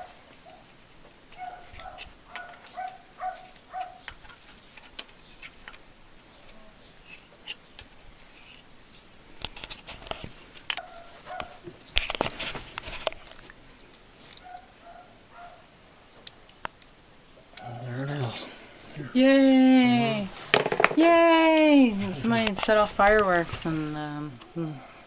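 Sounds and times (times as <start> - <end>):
clicks and knocks: 20.5 - 21.0.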